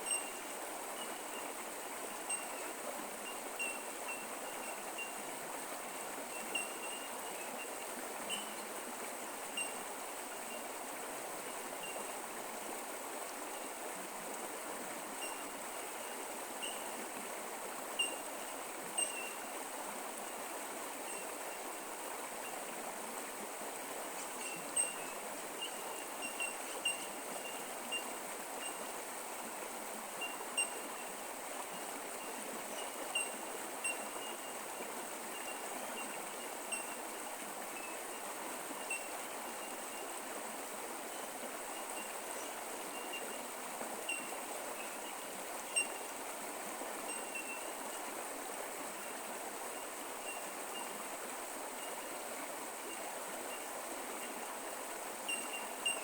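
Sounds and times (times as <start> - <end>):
faint steady high tone: 0.0 - 1.5, 6.3 - 8.8, 30.2 - 37.0
creek water running: 0.0 - 56.0.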